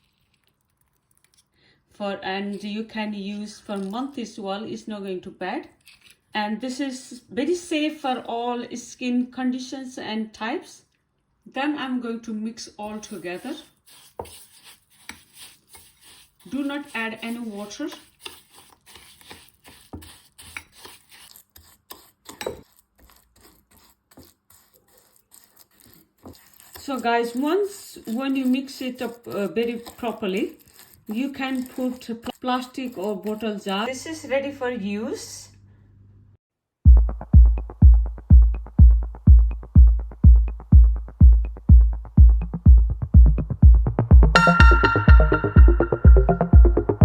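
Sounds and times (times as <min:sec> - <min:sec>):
spoon scraping gritty mix in bowl: 0:02.5 - 0:02.8, 0:12.8 - 0:34.0
electronic music: 0:36.9 - 0:47.0
kick drum: 0:36.9 - 0:47.0.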